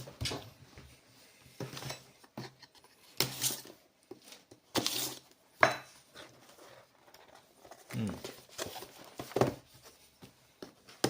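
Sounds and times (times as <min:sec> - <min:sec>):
cardboard packaging rustling: 0:06.1 - 0:11.0.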